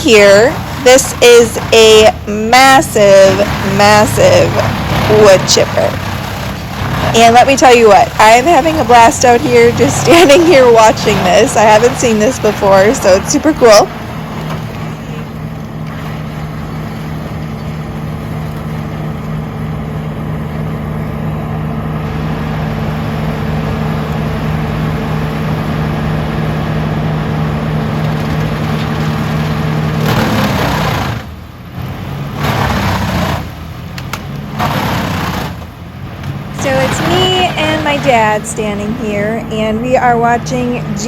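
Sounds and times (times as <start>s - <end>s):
wood chipper engine running: 0.0s - 41.0s
material going through chipper: 25.8s - 31.4s, 32.3s - 38.4s.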